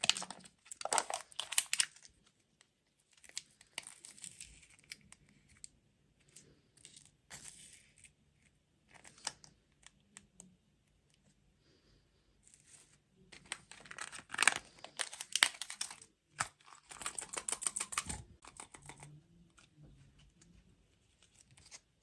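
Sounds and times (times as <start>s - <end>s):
plastic packaging crinkling: 0.0s - 2.3s, 13.3s - 19.1s.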